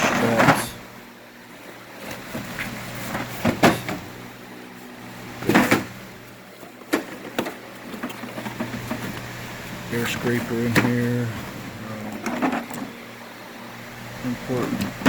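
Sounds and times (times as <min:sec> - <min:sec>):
steel drawers sliding: 0:00.0 - 0:00.8, 0:02.1 - 0:04.2, 0:05.3 - 0:09.2.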